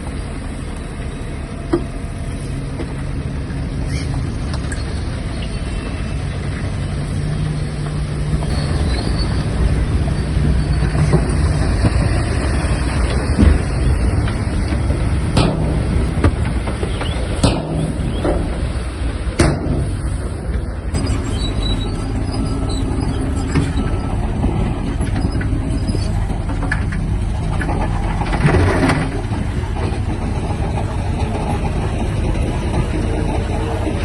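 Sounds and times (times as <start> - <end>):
bulldozer diesel engine running: 0.0 - 34.0
sharp metallic clanks: 15.3 - 18.8.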